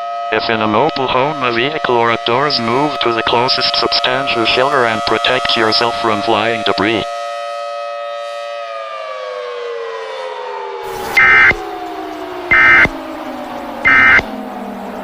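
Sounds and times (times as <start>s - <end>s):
warning siren winding down: 0.0s - 15.0s
shrill data bursts: 10.9s - 11.6s, 12.5s - 13.0s, 13.8s - 14.3s.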